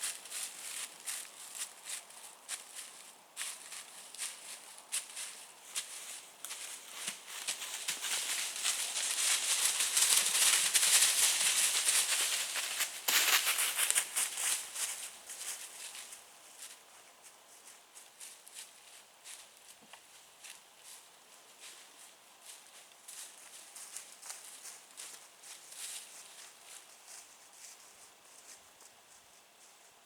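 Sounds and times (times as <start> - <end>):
dry leaves crackling and rustling: 0.0 - 16.7.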